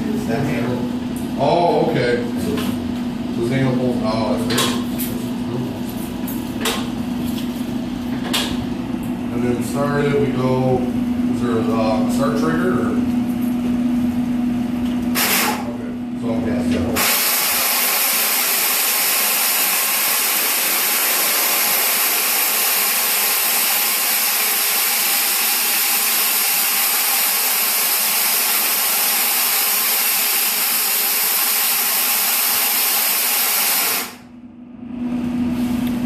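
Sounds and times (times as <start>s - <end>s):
floor grinder whirring hiss: 17.0s - 34.2s.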